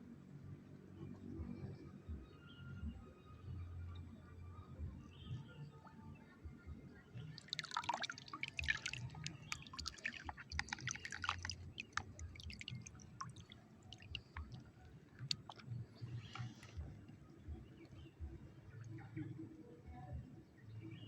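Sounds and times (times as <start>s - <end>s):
water splashing and dripping: 7.3s - 17.0s.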